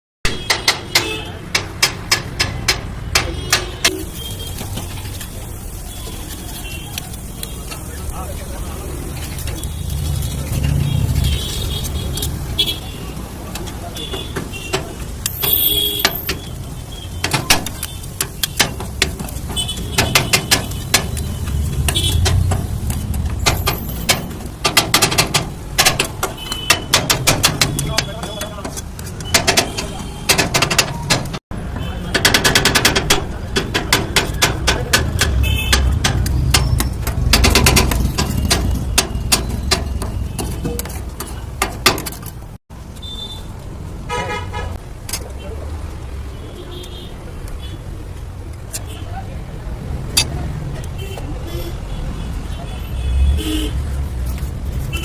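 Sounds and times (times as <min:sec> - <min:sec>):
sharp clicks and clatters: 0:13.4 - 0:42.6.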